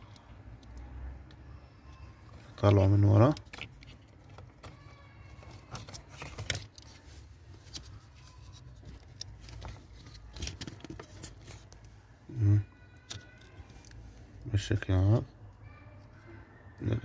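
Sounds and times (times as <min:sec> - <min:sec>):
clicks and scrapes of wiring plug: 0:01.9 - 0:11.9, 0:12.9 - 0:14.0.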